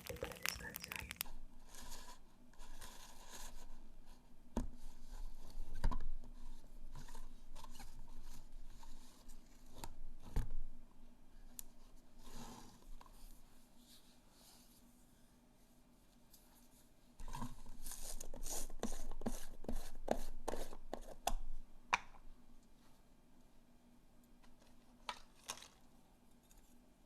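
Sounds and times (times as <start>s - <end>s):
slime popping: 0.0s - 1.2s
sticky slime crackling: 0.0s - 1.2s.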